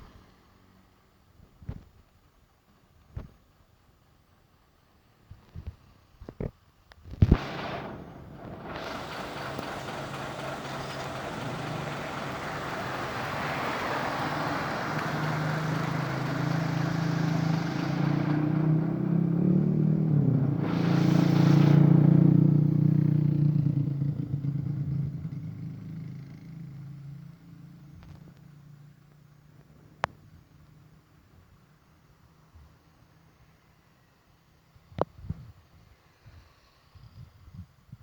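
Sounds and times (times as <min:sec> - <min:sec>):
truck passing by: 0:07.4 - 0:30.0.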